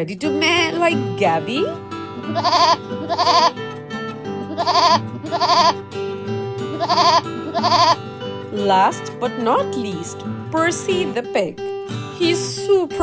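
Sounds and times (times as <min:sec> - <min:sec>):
background guitar music: 0:00.0 - 0:13.0
goat bleating: 0:02.2 - 0:03.6, 0:04.4 - 0:05.8, 0:06.7 - 0:08.0.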